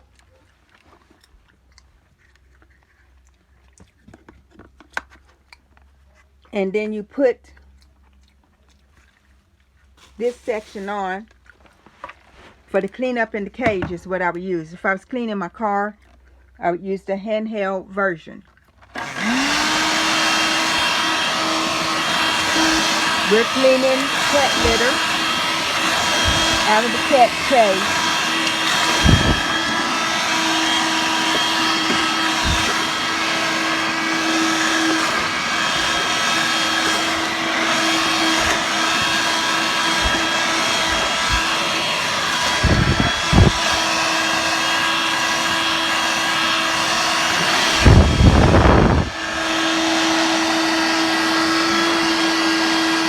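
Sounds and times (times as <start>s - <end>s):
handheld vacuum running: 18.9s - 53.0s.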